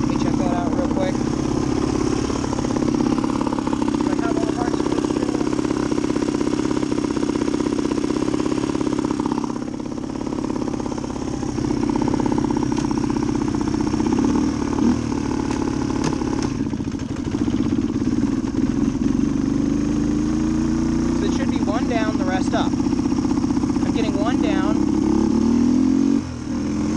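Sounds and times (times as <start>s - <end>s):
motorcycle engine idling: 0.0s - 26.9s.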